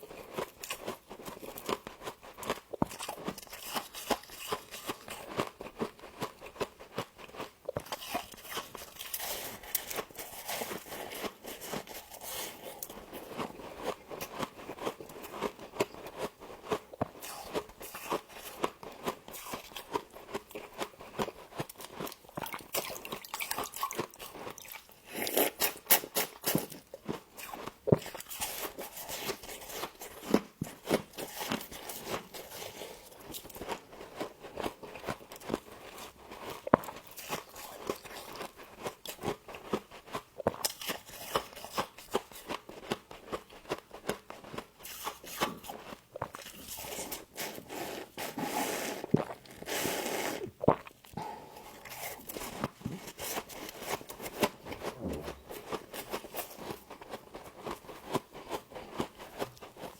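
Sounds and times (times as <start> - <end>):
crunching and chewing frost: 0.0 - 59.9.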